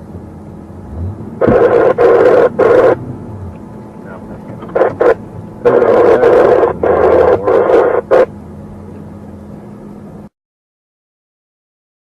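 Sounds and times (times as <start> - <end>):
police radio static bursts: 1.4 - 3.0, 4.1 - 8.3.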